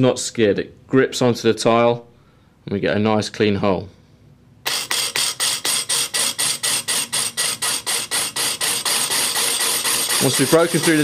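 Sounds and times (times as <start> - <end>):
cordless drill pulsing into tile: 4.7 - 11.0.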